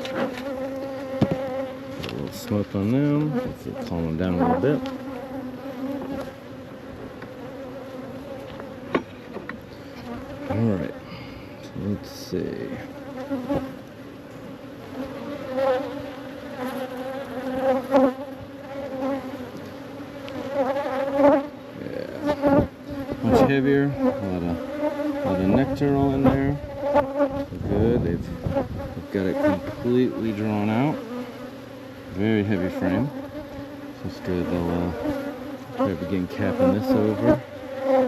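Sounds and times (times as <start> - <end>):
bees buzzing: 0.0 - 38.0
light knocks: 1.2 - 1.5.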